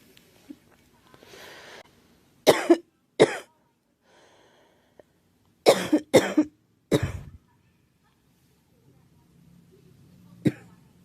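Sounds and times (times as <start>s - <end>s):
girl coughing: 2.5s - 3.5s, 5.7s - 7.4s, 10.5s - 10.7s.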